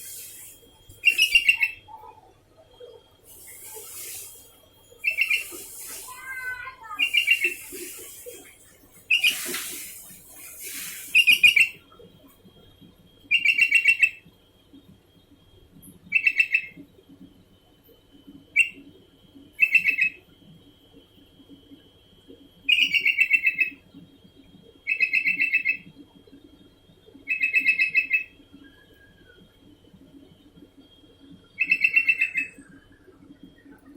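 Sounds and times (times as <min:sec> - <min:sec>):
bulbul chattering call: 0:05.0 - 0:08.2.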